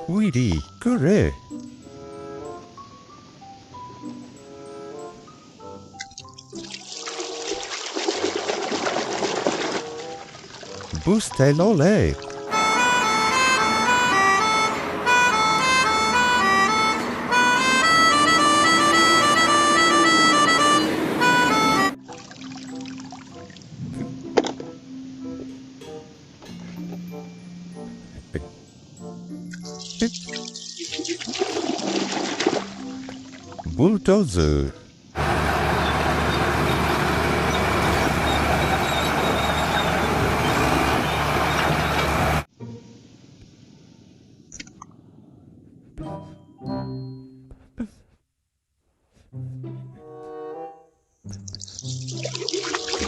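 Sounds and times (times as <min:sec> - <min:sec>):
bright stepped melody: 0:12.5 - 0:22.0
bulldozer engine rumble: 0:12.5 - 0:22.0, 0:35.2 - 0:42.5.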